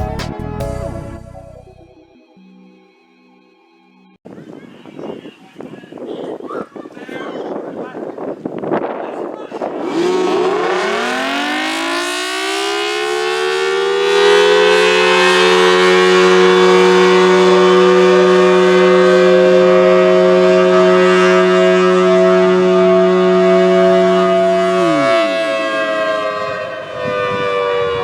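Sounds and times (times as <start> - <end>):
warning siren wailing: 9.8 - 28.0.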